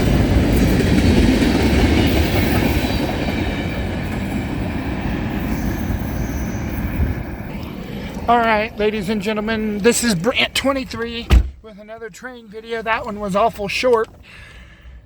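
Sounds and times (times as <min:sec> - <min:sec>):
train wheels rumbling on rails: 0:00.0 - 0:11.3.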